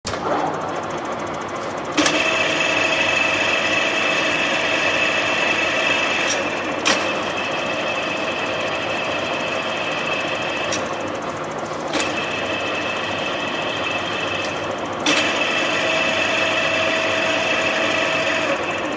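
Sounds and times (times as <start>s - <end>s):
milling machine whine: 0.1s - 18.9s.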